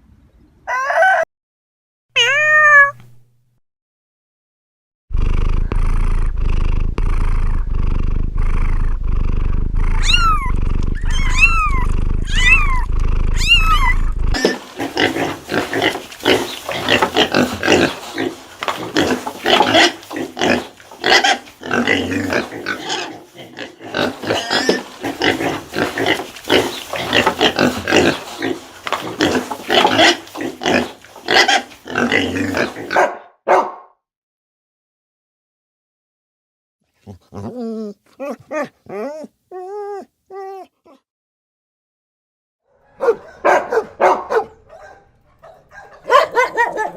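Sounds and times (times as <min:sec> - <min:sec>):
low rumble: 0:05.4 - 0:14.4
farm animals calling: 0:10.0 - 0:33.0, 0:43.0 - 0:46.9.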